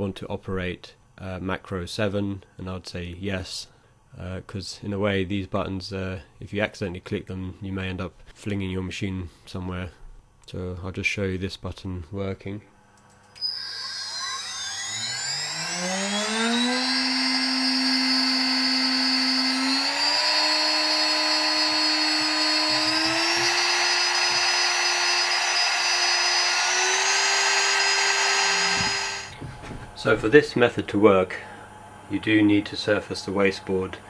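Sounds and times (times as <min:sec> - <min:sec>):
router spindle whining: 0:13.2 - 0:31.4.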